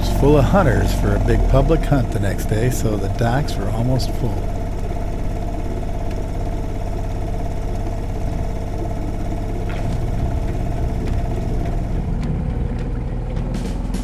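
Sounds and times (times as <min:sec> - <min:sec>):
outboard motor running: 0:00.0 - 0:13.4.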